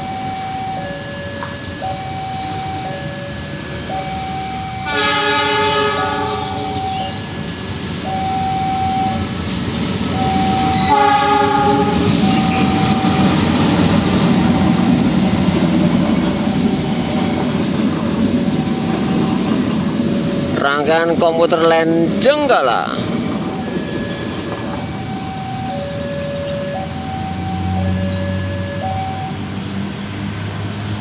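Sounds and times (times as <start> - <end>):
two-tone crossing alarm: 0.0 - 30.2
train rumbling on rails: 0.0 - 31.0
train horn: 4.8 - 7.2, 10.4 - 13.6.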